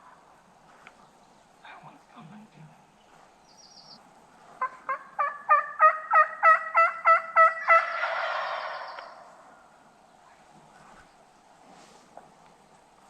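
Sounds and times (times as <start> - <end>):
turkey rattling call: 4.6 - 9.6
turkey yelps: 4.6 - 9.6.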